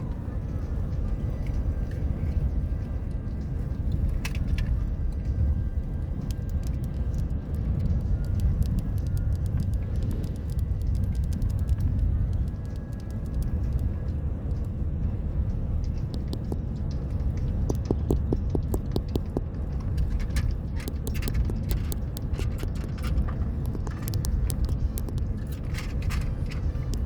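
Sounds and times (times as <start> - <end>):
car road and engine rumble: 0.0 - 27.0
sharp clicks: 8.2 - 13.9, 15.8 - 27.0.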